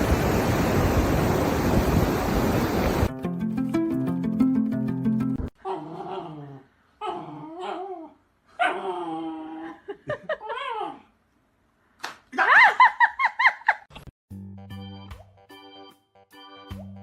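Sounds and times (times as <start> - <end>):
dog whining: 5.6 - 9.7
dog yipping: 7.0 - 9.0.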